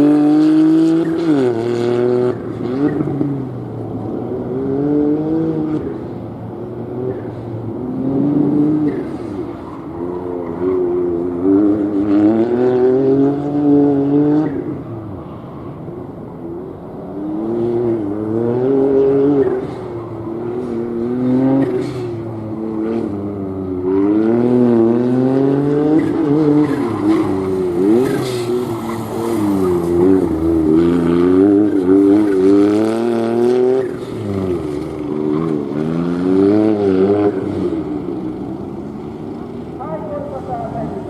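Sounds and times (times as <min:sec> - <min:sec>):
car engine revving hard: 0:00.0 - 0:03.5, 0:17.2 - 0:38.9.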